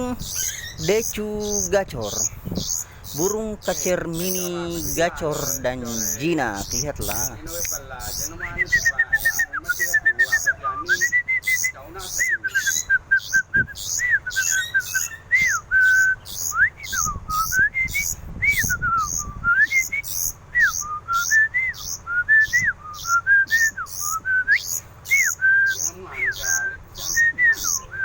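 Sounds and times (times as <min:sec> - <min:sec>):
very high chirps: 0:00.0 - 0:28.0
songbird whistled notes: 0:00.2 - 0:28.0.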